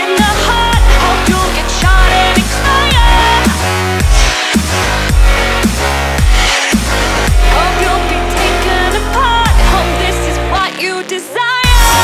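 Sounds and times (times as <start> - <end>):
heavy bass: 0.2 - 10.8
pitch-bending synth melody: 6.2 - 11.0.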